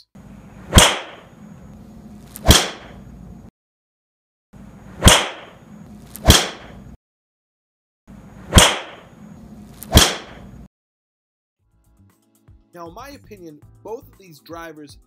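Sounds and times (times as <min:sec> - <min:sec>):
golf driver striking ball: 0:00.7 - 0:01.2.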